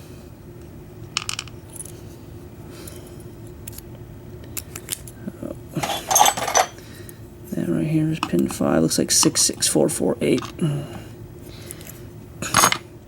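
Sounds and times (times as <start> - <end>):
small metal parts clinking: 1.2 - 1.9, 5.8 - 6.8, 10.3 - 10.6, 11.8 - 12.8.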